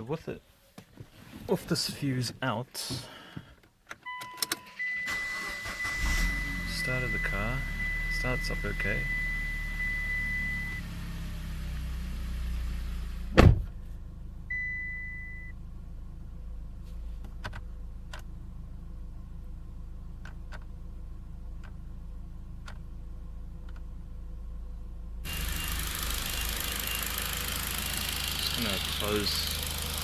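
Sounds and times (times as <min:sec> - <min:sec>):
car engine idling: 0:05.3 - 0:30.0
car door slamming: 0:13.2 - 0:13.8.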